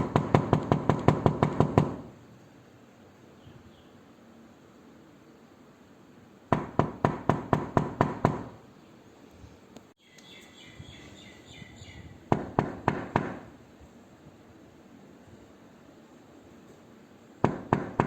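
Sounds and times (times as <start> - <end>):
rapid knocking on a door: 0.0 - 2.1, 6.5 - 8.6, 12.3 - 13.5, 17.4 - 18.0.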